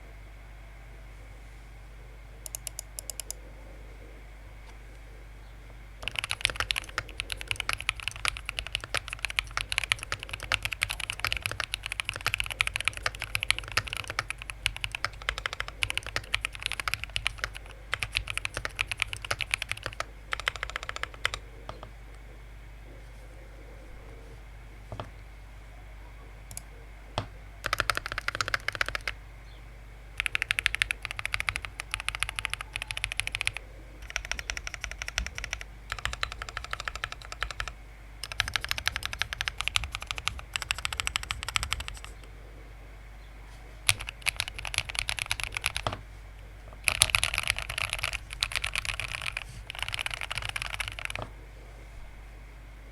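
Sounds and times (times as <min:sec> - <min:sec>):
typing on mechanical keyboard: 0:02.5 - 0:03.4, 0:06.0 - 0:21.9, 0:27.6 - 0:29.2, 0:30.2 - 0:42.1, 0:43.9 - 0:46.0, 0:46.8 - 0:51.3.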